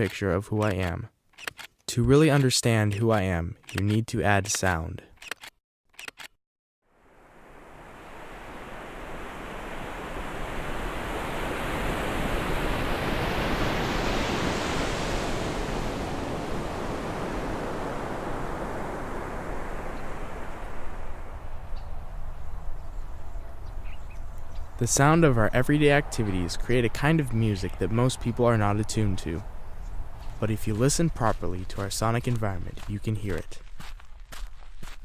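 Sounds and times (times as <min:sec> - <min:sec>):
short clicks: 0:00.0 - 0:06.4
steady rushing noise: 0:07.2 - 0:32.7.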